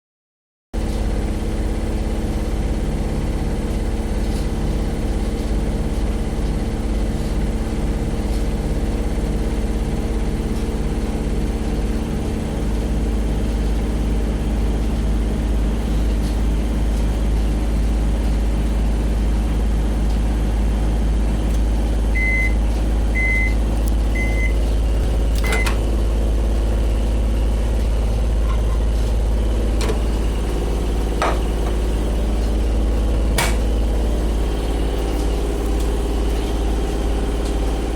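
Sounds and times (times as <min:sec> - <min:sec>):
microwave oven humming: 0:00.8 - 0:37.9
short beeps: 0:22.2 - 0:22.6, 0:23.2 - 0:24.6
sharp click: 0:33.4 - 0:33.7.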